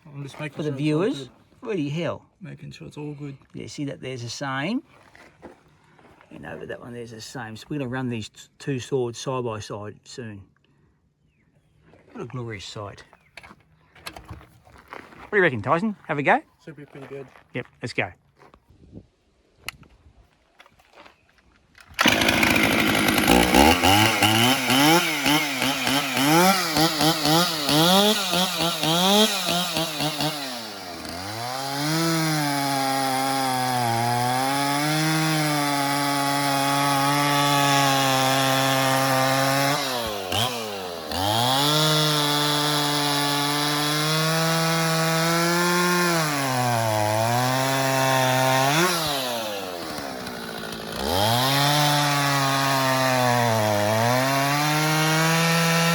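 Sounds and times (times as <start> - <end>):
chainsaw cutting wood: 21.8 - 55.9
chainsaw revving: 21.8 - 55.9.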